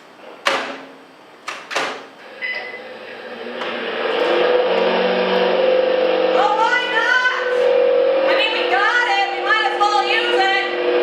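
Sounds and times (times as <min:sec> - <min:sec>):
sharp knocks: 0:00.4 - 0:00.9
microwave oven humming: 0:02.0 - 0:11.0.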